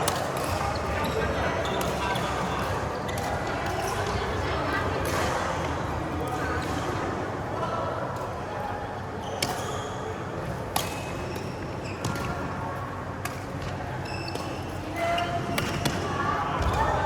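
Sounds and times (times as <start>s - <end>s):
shoes squeaking on court floor: 9.2s - 10.0s, 13.6s - 16.0s.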